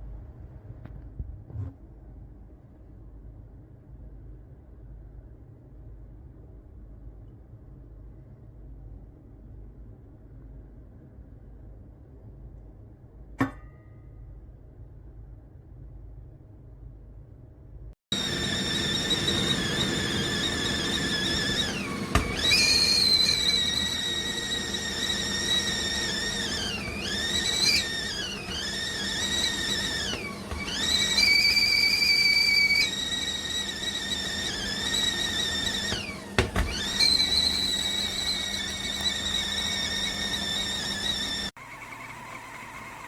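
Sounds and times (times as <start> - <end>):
kettle whistling: 18.1 - 43.0.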